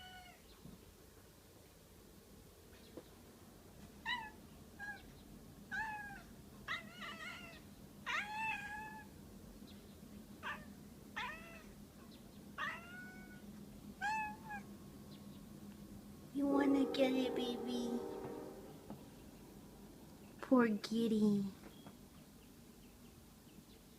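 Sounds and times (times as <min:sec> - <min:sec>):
cat chirping meows: 0:00.0 - 0:00.5, 0:04.0 - 0:05.1, 0:05.7 - 0:09.1, 0:10.4 - 0:11.8, 0:12.6 - 0:14.7.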